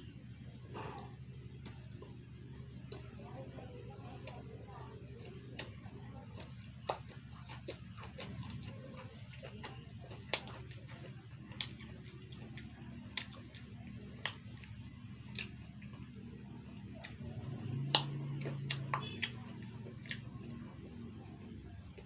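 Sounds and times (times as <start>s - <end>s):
low steady hum: 0.0s - 22.0s
mouth chewing clicks: 0.5s - 22.0s.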